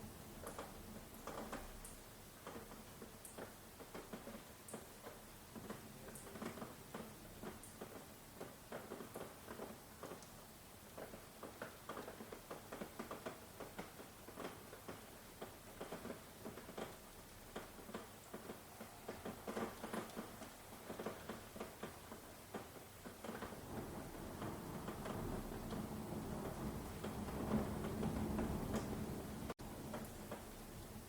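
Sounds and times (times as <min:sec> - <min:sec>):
rain pattering and dripping: 0:00.0 - 0:31.0
distant thunder rumble: 0:23.3 - 0:31.0.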